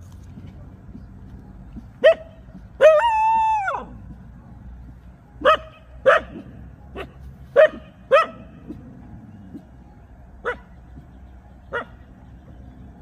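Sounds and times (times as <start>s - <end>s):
dog barking: 2.0s - 3.1s, 5.4s - 8.5s, 10.4s - 10.8s, 11.7s - 12.0s.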